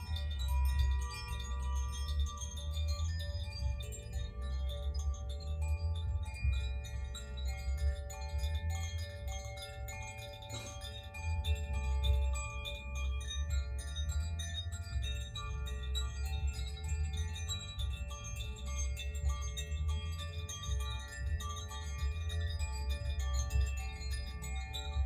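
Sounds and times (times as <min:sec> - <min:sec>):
wind chimes ringing: 0:00.0 - 0:25.0.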